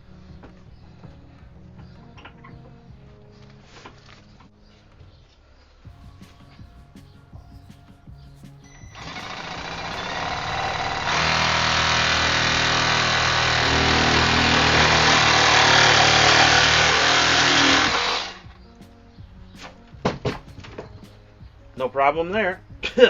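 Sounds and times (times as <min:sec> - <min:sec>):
reciprocating saw cutting plastic pipe: 0:09.0 - 0:18.4.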